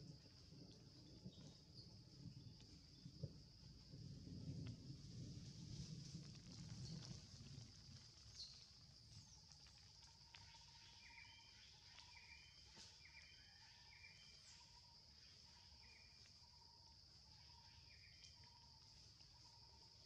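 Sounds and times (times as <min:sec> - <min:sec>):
high insect drone: 0:06.6 - 0:20.0.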